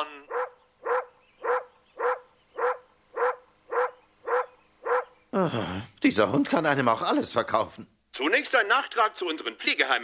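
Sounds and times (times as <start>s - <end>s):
dog barking: 0.3s - 5.1s.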